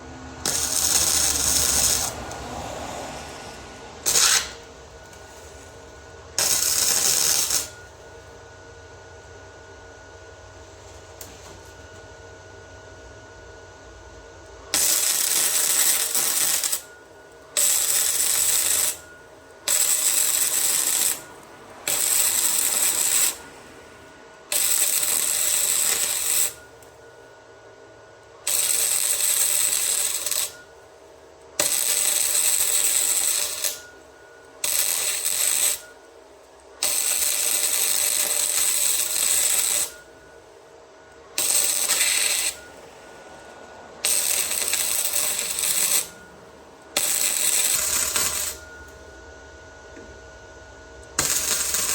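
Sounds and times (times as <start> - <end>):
welding arc crackling: 0.4 - 2.7, 4.0 - 5.8, 6.4 - 7.8, 14.7 - 23.7, 24.5 - 26.7, 28.4 - 30.6, 31.6 - 34.0, 34.6 - 36.0, 36.8 - 40.1, 41.4 - 42.7, 44.0 - 46.3, 46.9 - 49.0, 51.1 - 51.9.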